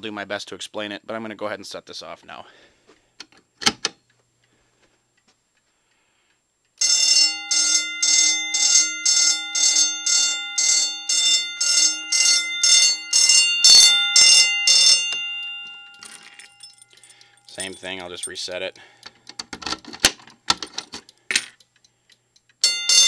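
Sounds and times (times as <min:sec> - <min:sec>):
fire alarm bell ringing: 0:06.8 - 0:18.5, 0:22.6 - 0:23.0.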